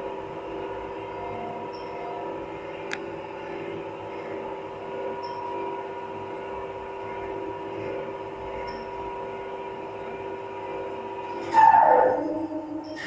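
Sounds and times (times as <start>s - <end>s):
elevator motor humming and whining: 0.0s - 13.0s.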